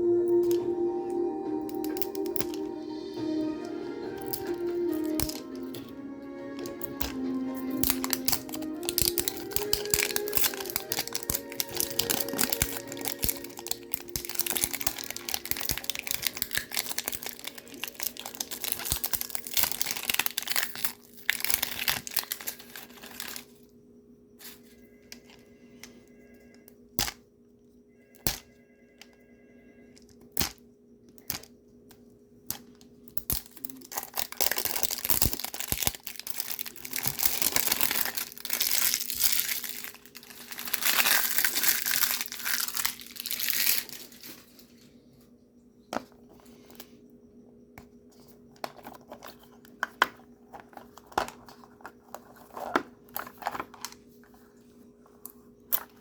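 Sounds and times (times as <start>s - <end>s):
plastic packaging tearing and crinkling: 4.2s - 5.9s, 6.6s - 23.5s, 33.2s - 44.6s.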